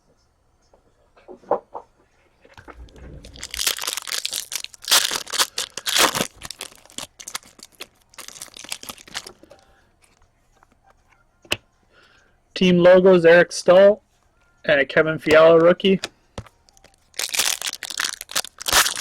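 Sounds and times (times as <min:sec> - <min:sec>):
foil wrapper crinkling: 0:02.6 - 0:09.7, 0:16.7 - 0:19.0.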